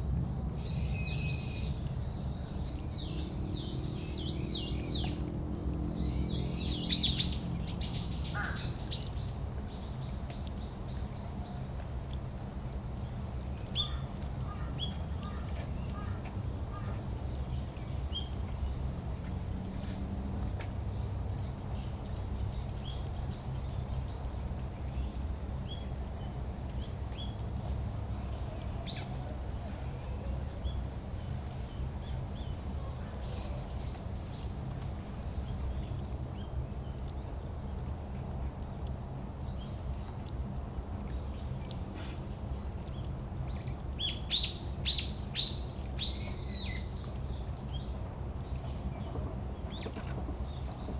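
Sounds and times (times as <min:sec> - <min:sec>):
high-pitched insect trill: 0:00.0 - 0:20.2, 0:20.8 - 0:50.9
songbirds chirping: 0:00.6 - 0:12.2, 0:42.4 - 0:50.9.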